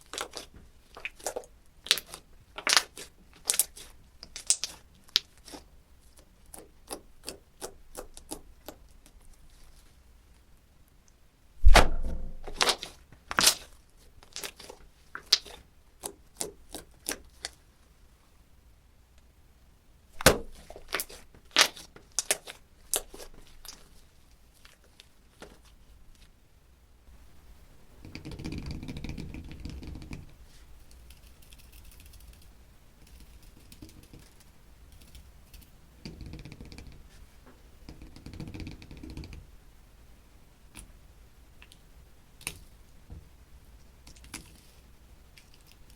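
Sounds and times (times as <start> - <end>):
slime squishing: 0.0 - 10.0, 11.6 - 17.6, 20.2 - 26.3.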